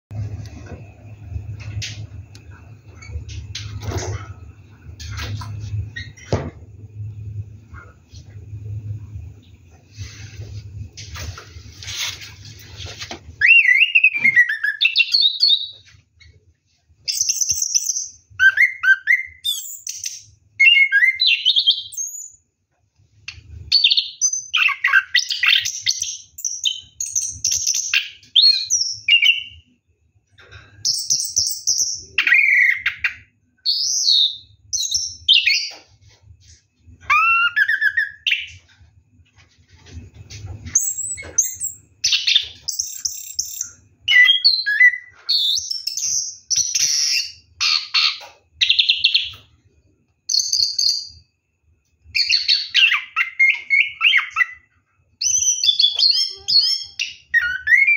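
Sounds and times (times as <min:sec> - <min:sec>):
thrush singing whistles and warbles: 0:13.4 - 0:15.8, 0:40.8 - 0:49.5, 0:52.1 - 0:57.9.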